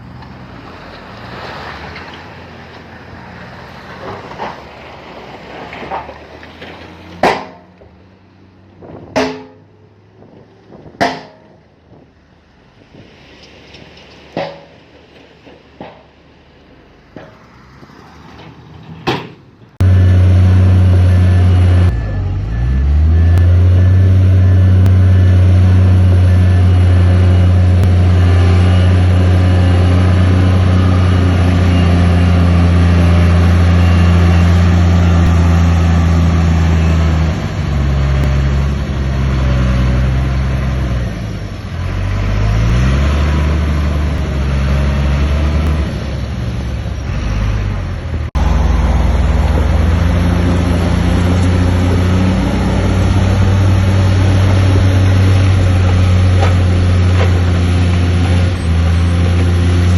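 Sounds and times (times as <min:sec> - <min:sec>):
heavy diesel engine working: 0:18.4 - 0:59.9.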